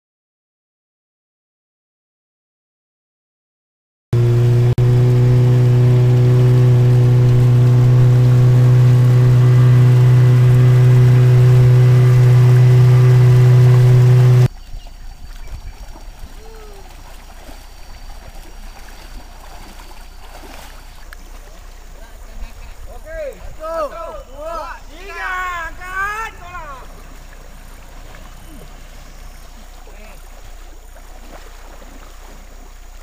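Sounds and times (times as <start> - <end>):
engine drone: 4.2 - 14.6, 24.2 - 33.0.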